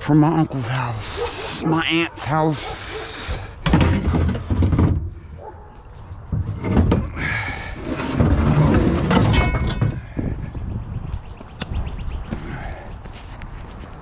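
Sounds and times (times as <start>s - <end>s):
scrap metal clanking: 3.2s - 5.4s, 6.3s - 10.2s.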